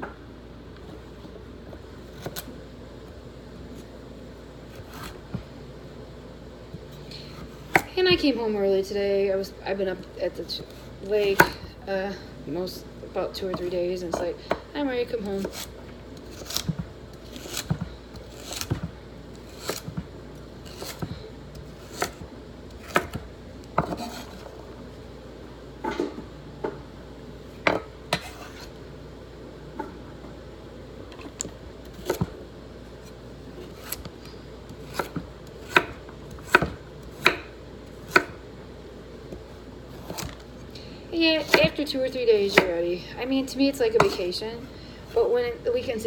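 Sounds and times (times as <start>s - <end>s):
knife chopping on cutting board: 15.3s - 24.4s, 27.6s - 28.7s, 34.8s - 38.4s, 41.4s - 41.8s, 44.0s - 44.3s.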